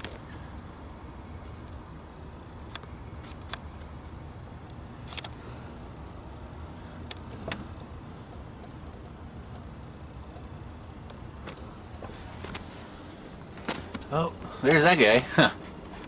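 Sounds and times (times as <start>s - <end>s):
vehicle engine humming: 0.0s - 16.0s
sharp clicks and rattles: 7.0s - 12.6s.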